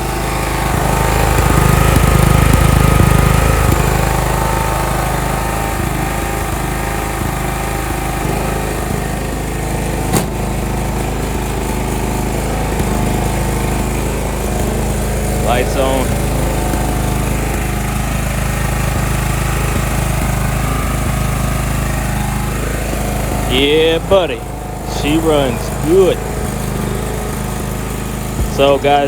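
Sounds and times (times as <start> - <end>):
lawn mower engine running: 0.0 - 29.0.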